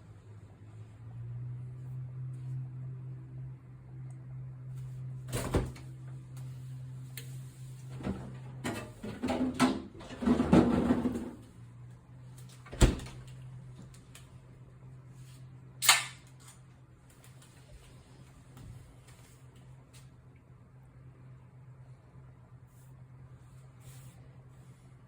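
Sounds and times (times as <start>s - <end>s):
steady low hum: 11.0s - 25.0s.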